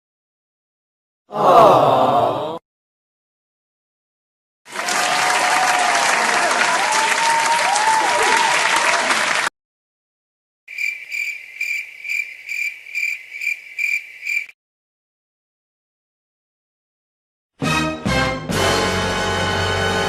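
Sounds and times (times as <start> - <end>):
crowd applauding: 4.7 - 9.5
cricket chirping: 10.7 - 14.6.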